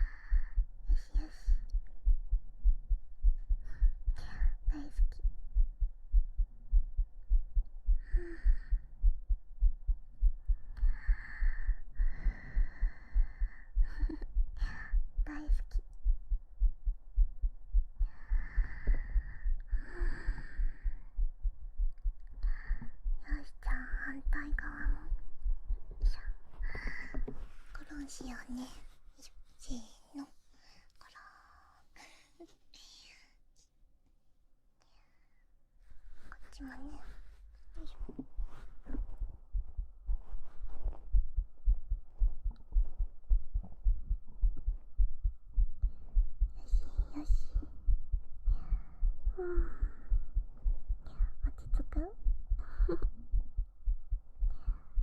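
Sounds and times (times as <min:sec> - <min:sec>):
heartbeat: 0:00.0 - 0:29.0, 0:36.1 - 0:55.0
soft breaths on microphone: 0:17.7 - 0:33.7, 0:34.9 - 0:55.0.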